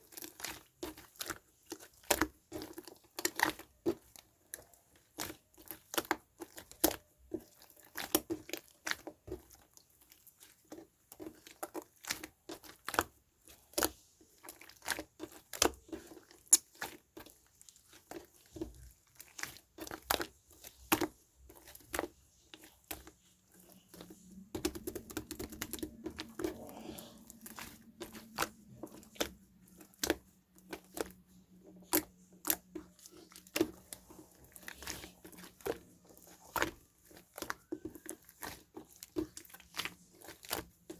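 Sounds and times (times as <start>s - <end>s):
paper and plastic crinkling: 0.0s - 40.9s.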